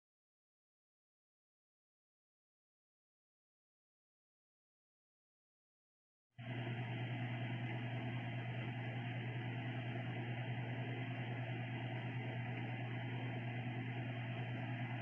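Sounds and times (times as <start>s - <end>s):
small electric motor humming: 6.4s - 15.0s.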